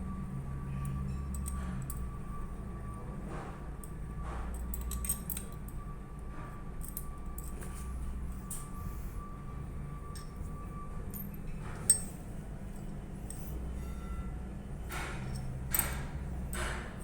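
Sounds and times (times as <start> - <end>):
steady low hum: 0.0 - 17.0
metal tools clicking and clinking: 0.8 - 2.1, 4.5 - 5.8, 11.1 - 14.3, 14.9 - 17.0.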